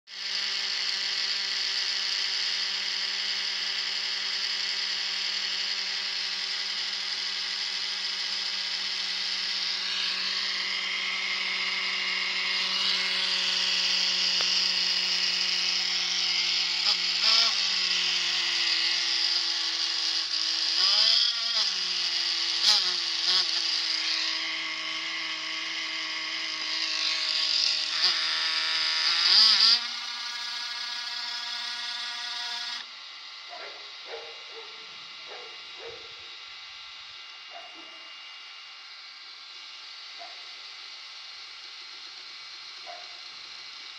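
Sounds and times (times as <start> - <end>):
laptop fan whining: 0.2 - 21.0.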